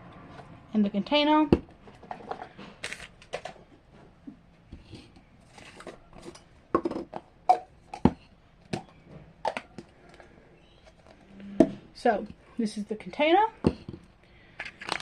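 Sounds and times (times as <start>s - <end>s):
plastic packaging rustling: 14.6s - 15.0s.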